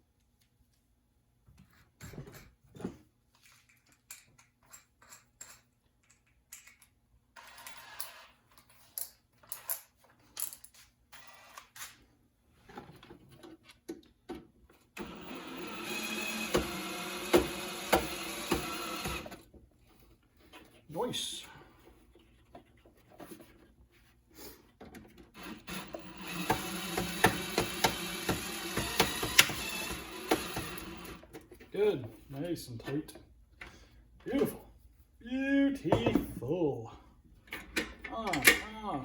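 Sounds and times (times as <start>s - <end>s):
small parts and tools clicking: 3.4s - 12.0s, 24.9s - 31.5s
power drill driving a screw: 15.0s - 19.4s, 25.4s - 31.2s.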